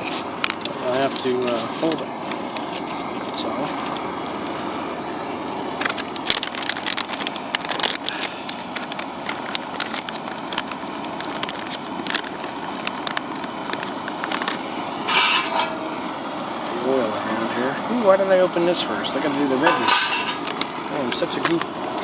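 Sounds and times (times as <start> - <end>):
sharp clicks and crackles: 0.0 - 4.7, 5.8 - 15.8, 19.2 - 22.0
camp stove burner hissing: 0.0 - 22.0.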